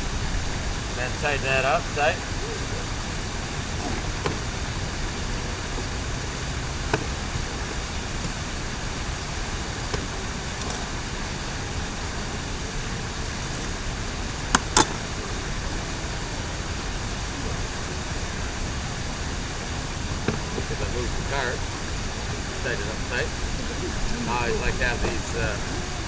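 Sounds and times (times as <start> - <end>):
background rumble: 0.0 - 26.0
tie-down strap being tightened: 3.7 - 4.6, 9.9 - 11.1.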